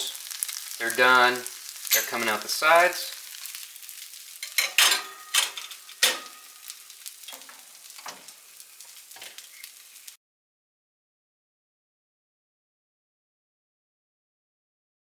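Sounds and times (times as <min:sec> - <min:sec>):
food sizzling: 0:00.0 - 0:10.2.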